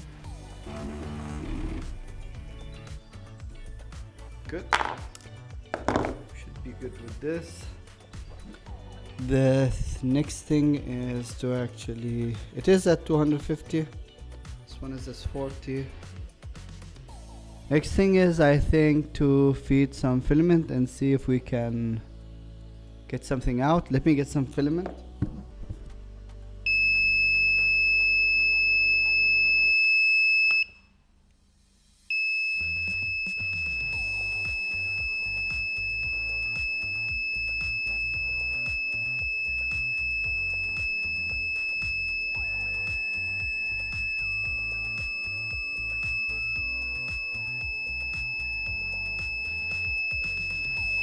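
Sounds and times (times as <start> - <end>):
background music: 0.0 - 29.8, 31.5 - 51.0
high-pitched electronic alarm tone: 32.1 - 51.0.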